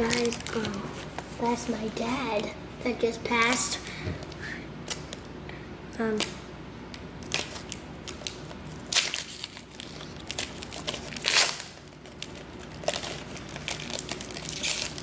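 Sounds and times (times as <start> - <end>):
wrapper crinkling and tearing: 0.0 - 1.7, 6.1 - 15.0.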